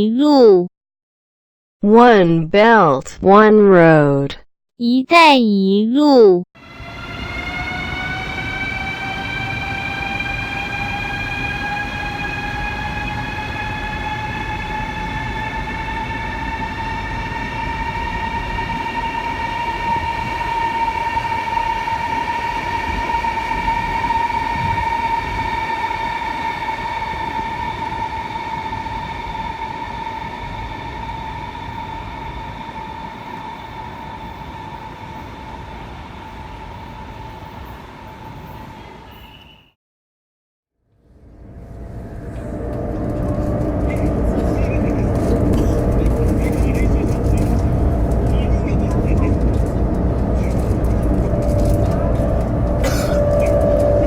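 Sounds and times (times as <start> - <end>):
train whine: 6.6 - 39.4, 41.0 - 54.0
train rumble: 41.1 - 54.0.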